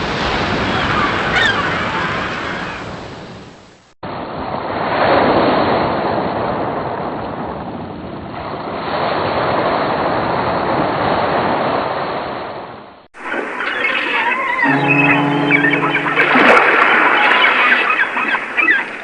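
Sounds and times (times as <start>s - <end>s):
ocean waves breaking: 13.2s - 19.0s.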